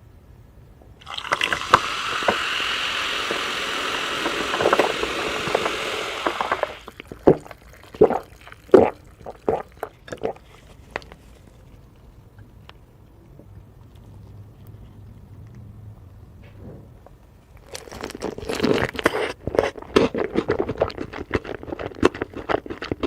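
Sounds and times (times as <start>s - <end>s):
thick sauce pouring: 1.0s - 11.0s
crunchy chewing: 6.5s - 16.3s, 17.5s - 23.0s.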